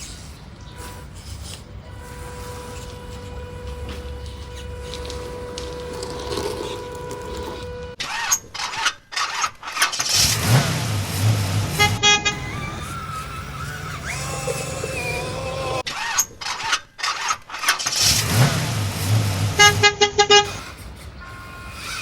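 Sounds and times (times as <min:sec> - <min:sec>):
steady vehicle hum: 0:00.0 - 0:08.0, 0:09.7 - 0:15.9, 0:17.8 - 0:22.0
short horn toot: 0:00.6 - 0:08.0, 0:10.4 - 0:15.8, 0:18.2 - 0:22.0
engine winding up in pitch: 0:00.8 - 0:08.2, 0:10.0 - 0:16.2, 0:17.8 - 0:22.0.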